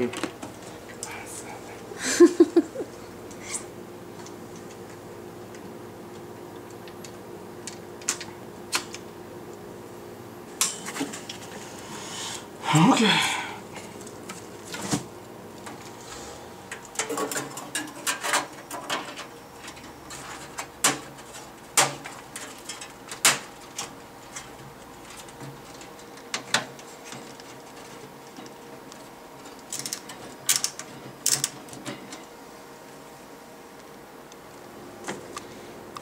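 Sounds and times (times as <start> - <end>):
computer parts clicking and knocking: 16.8 - 32.3.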